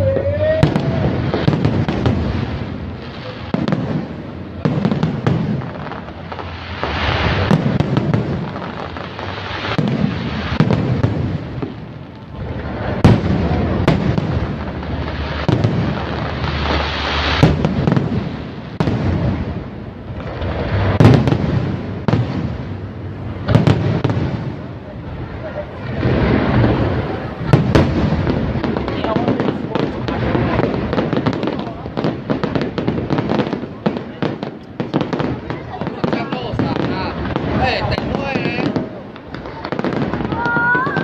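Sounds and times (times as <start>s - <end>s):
fireworks crackling and sizzling: 0.0s - 41.0s
fireworks shells booming: 0.0s - 41.0s.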